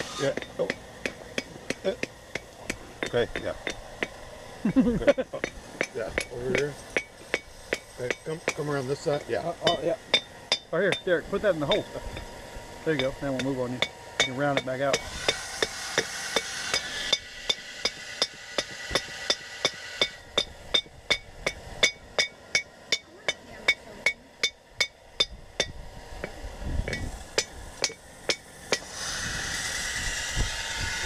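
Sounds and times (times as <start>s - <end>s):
hiss: 0.0s - 2.0s, 14.9s - 20.8s, 26.2s - 31.0s
hammer striking steel on anvil: 0.0s - 4.2s, 5.1s - 12.3s, 13.0s - 25.8s, 26.9s - 28.9s.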